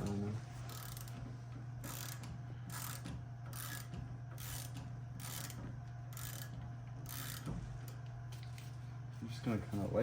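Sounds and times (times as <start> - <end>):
steady low hum: 0.0 - 10.0
hand ratchet clicking: 0.7 - 1.2, 1.8 - 7.5.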